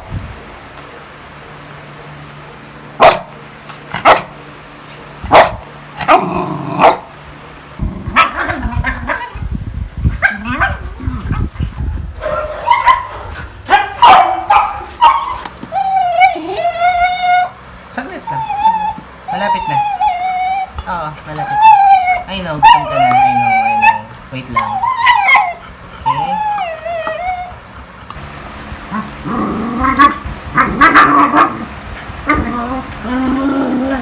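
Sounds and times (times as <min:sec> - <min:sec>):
dog barking: 0:03.0 - 0:03.3, 0:04.0 - 0:04.3, 0:05.3 - 0:05.6, 0:06.8 - 0:07.1, 0:12.2 - 0:15.4
dog yipping and whining: 0:10.2 - 0:27.8
low rumble: 0:28.2 - 0:34.0.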